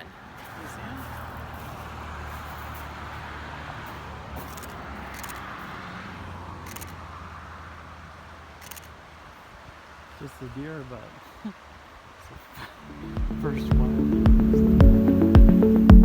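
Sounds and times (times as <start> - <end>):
vehicle engine hum: 0.0 - 9.2, 12.8 - 16.0
road noise rushing: 0.0 - 16.0
faint high ticks: 3.8 - 5.8, 6.6 - 7.0, 8.6 - 9.0.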